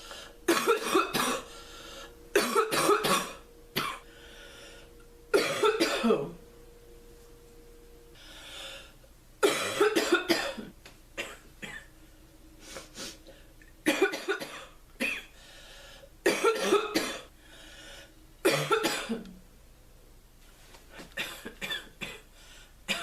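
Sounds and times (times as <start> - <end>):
girl coughing: 0.5 - 1.6, 2.3 - 4.0, 5.3 - 6.4, 9.4 - 11.9, 13.8 - 15.3, 16.3 - 17.3, 18.4 - 19.2, 21.2 - 22.3.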